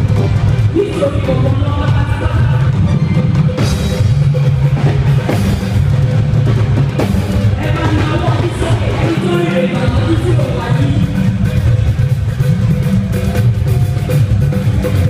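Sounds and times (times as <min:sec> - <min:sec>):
loud music with drums and bass: 0:00.0 - 0:15.0.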